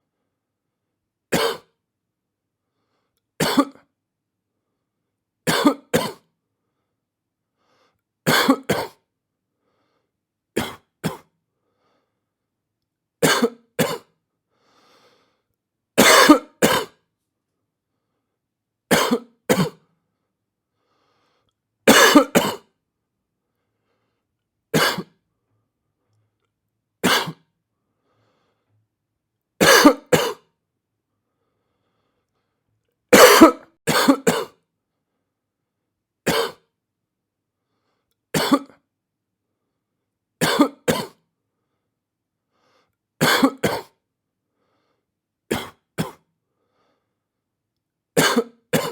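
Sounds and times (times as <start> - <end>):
person coughing: 1.4 - 1.7, 3.4 - 3.8, 5.5 - 6.3, 8.3 - 9.0, 10.6 - 11.3, 13.2 - 14.1, 16.0 - 17.0, 18.9 - 19.8, 21.9 - 22.7, 24.8 - 25.2, 27.0 - 27.4, 29.6 - 30.5, 33.2 - 34.6, 36.3 - 36.7, 38.4 - 38.8, 40.4 - 41.2, 43.2 - 44.0, 45.5 - 46.3, 48.2 - 48.9.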